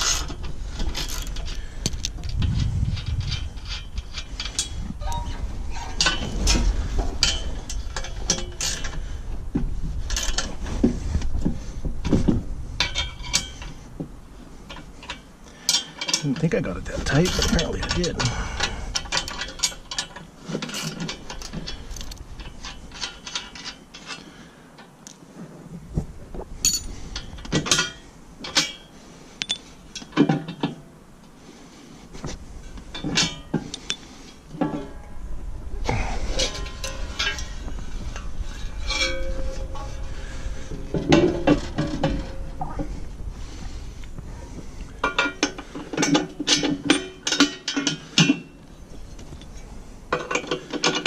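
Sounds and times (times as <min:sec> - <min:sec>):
low steady rumble: 0:00.0 - 0:24.6, 0:30.8 - 0:47.2
hand tools clinking on metal: 0:14.7 - 0:24.3, 0:26.6 - 0:30.8, 0:38.2 - 0:39.9, 0:45.0 - 0:48.5.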